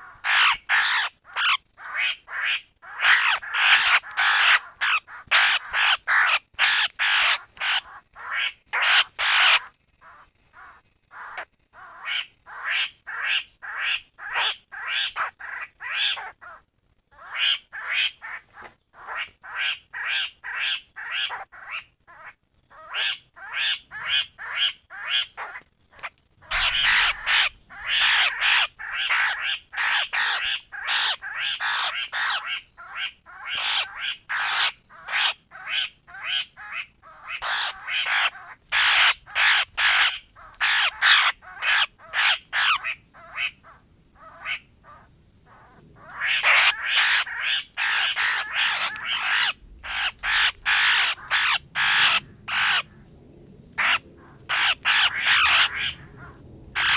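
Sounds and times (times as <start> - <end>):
bird giving short calls: 26.4 - 52.9, 53.8 - 56.9.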